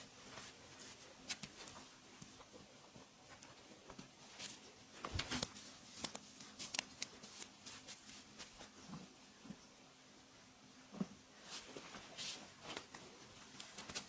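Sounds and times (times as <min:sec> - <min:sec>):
hands rubbing and patting skin: 0:05.2 - 0:08.6.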